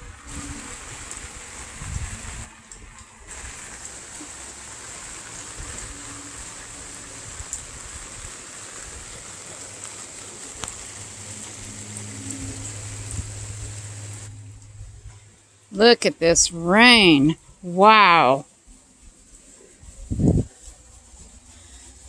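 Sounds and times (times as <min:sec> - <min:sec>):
heavy rain hissing: 0:00.0 - 0:22.0.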